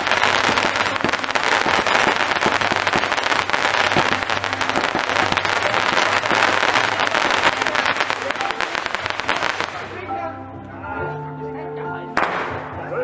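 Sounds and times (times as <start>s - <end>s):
fireworks crackling: 0.0s - 10.1s.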